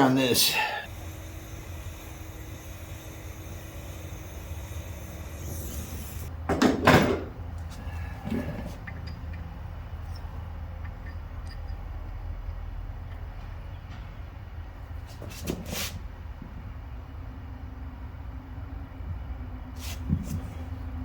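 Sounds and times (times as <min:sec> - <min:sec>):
steady hiss: 0:00.2 - 0:06.3.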